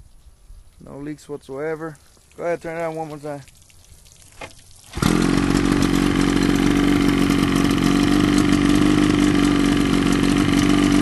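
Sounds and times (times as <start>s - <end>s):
outboard motor running: 4.4s - 11.0s.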